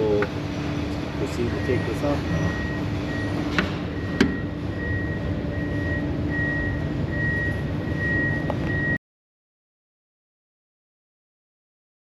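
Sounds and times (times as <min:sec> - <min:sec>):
machine humming with high whine: 0:00.0 - 0:09.0.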